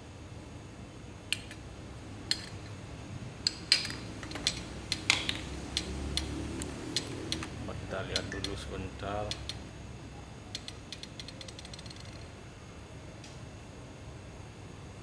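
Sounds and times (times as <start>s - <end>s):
small metal parts clinking: 2.2s - 2.8s, 3.4s - 9.7s, 10.5s - 12.3s.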